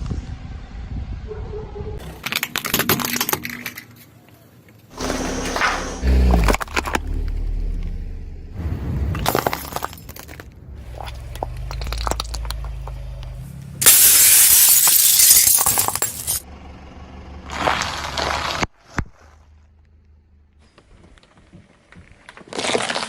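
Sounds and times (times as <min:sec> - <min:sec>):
low tyre rumble: 0:00.0 - 0:14.8, 0:15.4 - 0:22.5
glass cracking: 0:02.0 - 0:04.1, 0:09.2 - 0:13.0, 0:13.8 - 0:16.4
glass shattering crunch: 0:02.0 - 0:04.2, 0:09.1 - 0:13.2, 0:13.8 - 0:16.4, 0:22.3 - 0:23.0.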